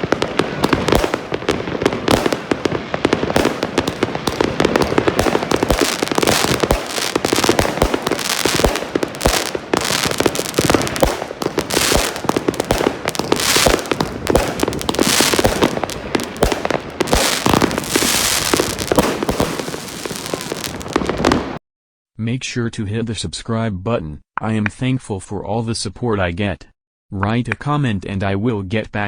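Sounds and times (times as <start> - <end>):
firework cake firing shots: 0.0 - 21.6
firework crackling: 0.0 - 21.6.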